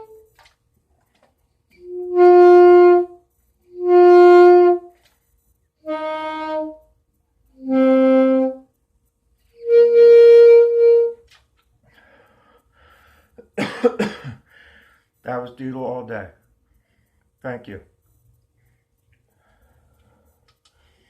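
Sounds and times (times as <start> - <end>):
woodwind held notes: 1.7 - 4.9, 5.8 - 6.9, 7.6 - 8.6, 9.6 - 11.2.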